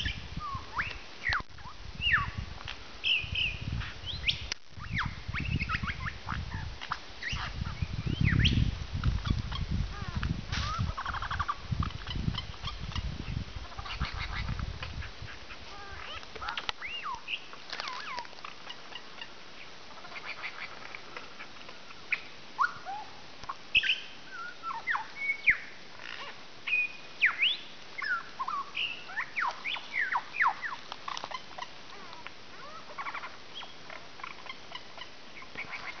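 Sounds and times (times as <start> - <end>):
lyrebird whistling calls: 15.8 - 18.3, 22.1 - 23.2, 23.8 - 31.7.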